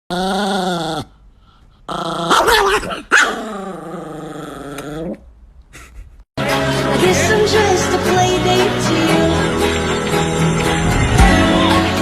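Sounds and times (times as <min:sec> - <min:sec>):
dog growling: 0:00.1 - 0:01.2, 0:01.9 - 0:05.3.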